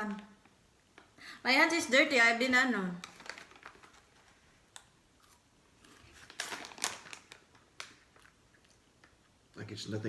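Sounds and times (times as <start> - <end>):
snack bag crackling: 3.0 - 8.8.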